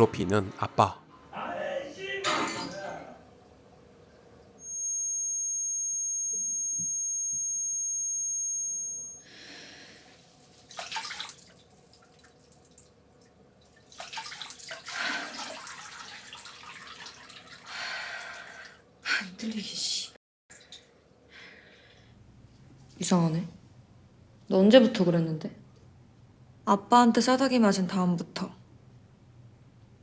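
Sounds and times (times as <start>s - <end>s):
high steady ringing tone: 4.4s - 9.6s
water sounds with short bursts: 10.7s - 12.9s, 13.8s - 17.7s.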